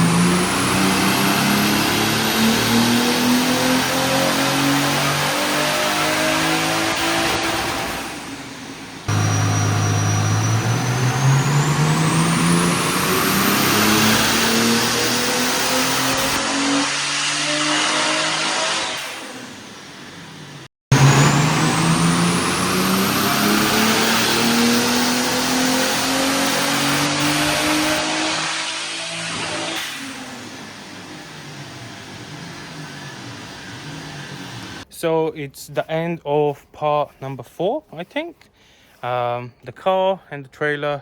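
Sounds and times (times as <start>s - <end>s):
car engine revving: 0.0s - 34.9s
turbo whistle: 9.1s - 11.5s.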